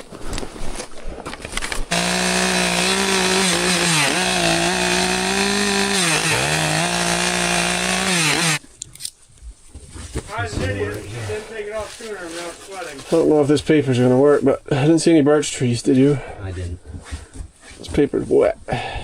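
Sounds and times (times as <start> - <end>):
chainsaw cutting wood: 1.9 - 8.6
rustling: 8.6 - 14.6.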